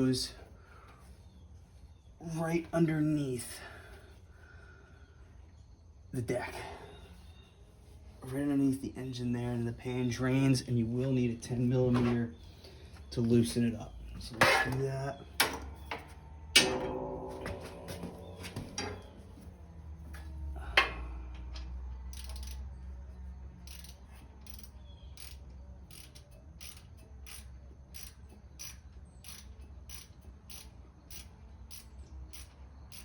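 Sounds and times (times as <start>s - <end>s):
sharp metallic knock: 15.4s - 19.5s
socket ratchet clicking: 22.1s - 22.7s, 23.6s - 33.0s.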